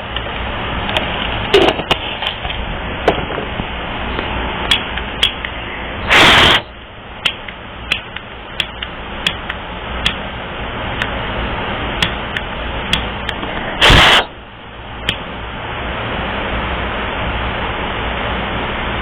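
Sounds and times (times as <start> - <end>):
rush of flame: 6.1 - 6.7, 13.6 - 14.4.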